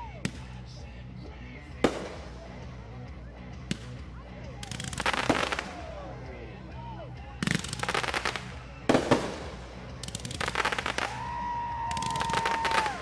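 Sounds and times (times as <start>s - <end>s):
fireworks crackling bangs: 1.8s - 2.7s, 4.6s - 5.9s, 7.4s - 13.0s.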